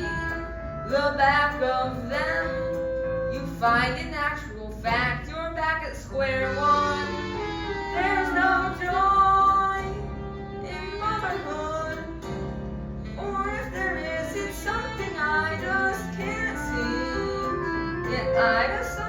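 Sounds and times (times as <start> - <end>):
instrumental accompaniment: 0.0 - 19.0
woman singing: 0.0 - 19.0.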